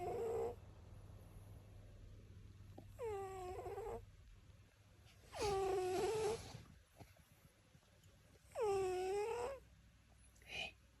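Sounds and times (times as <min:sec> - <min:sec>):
cat snoring: 0:00.0 - 0:00.6, 0:02.9 - 0:04.0, 0:05.3 - 0:06.7, 0:08.5 - 0:09.6.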